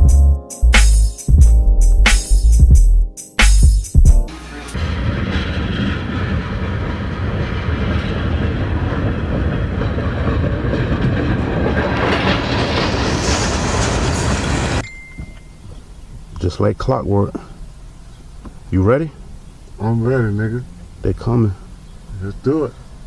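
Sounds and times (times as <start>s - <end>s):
loud rumbling and rattling: 4.3s - 14.8s.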